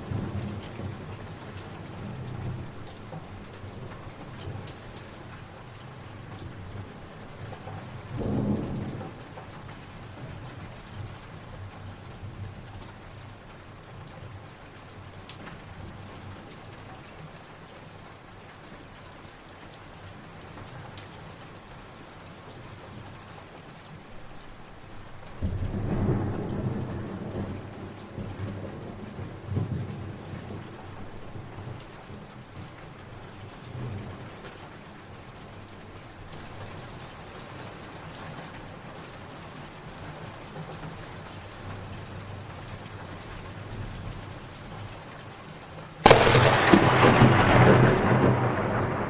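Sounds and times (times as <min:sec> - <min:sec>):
steady rain falling: 0:00.0 - 0:49.0
low rolls of thunder: 0:07.9 - 0:10.5, 0:25.4 - 0:31.8, 0:46.0 - 0:49.0.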